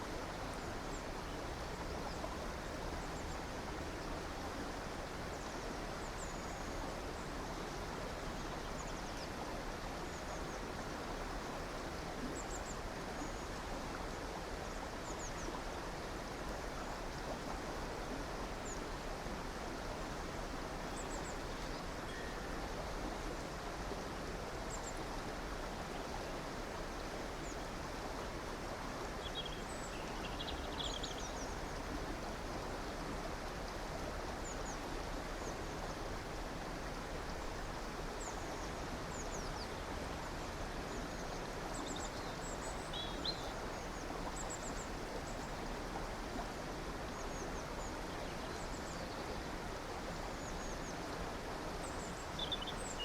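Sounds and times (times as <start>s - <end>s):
flowing stream rushing: 0.0s - 53.0s
small birds chirping: 52.4s - 53.0s.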